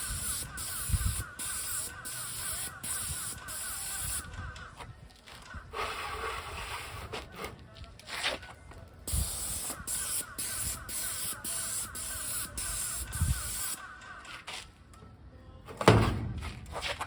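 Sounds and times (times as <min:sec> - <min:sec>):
paint sprayer hissing: 0:00.0 - 0:04.2, 0:09.1 - 0:13.8.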